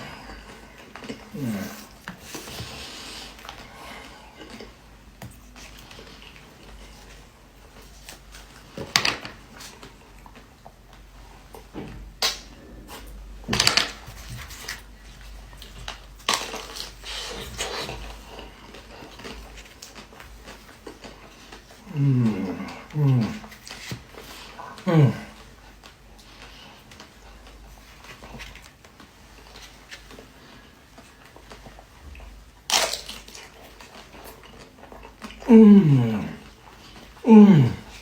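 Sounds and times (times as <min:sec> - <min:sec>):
chewing: 0:00.0 - 0:08.8, 0:09.6 - 0:38.0
pastry crunching: 0:32.6 - 0:35.5.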